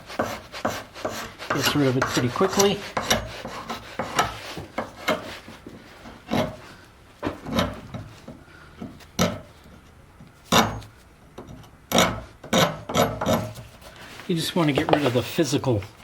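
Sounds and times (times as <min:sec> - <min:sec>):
hand scraper scraping wood: 0:00.0 - 0:09.5.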